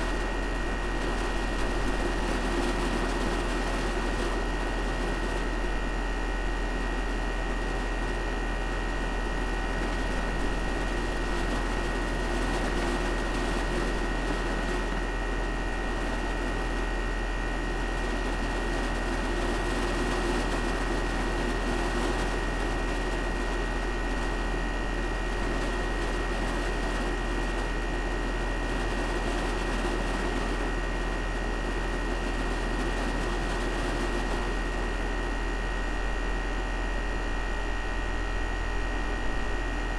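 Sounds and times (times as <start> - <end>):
air conditioner hum: 0.0 - 3.8, 33.2 - 39.9.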